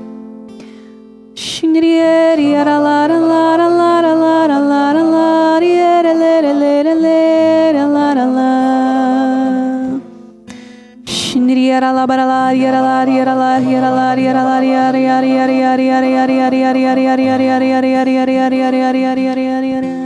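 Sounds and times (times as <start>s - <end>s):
acoustic guitar: 0.0s - 20.0s
person drawing a breath: 0.5s - 1.2s, 10.5s - 11.0s
person singing slow melody: 1.4s - 20.0s.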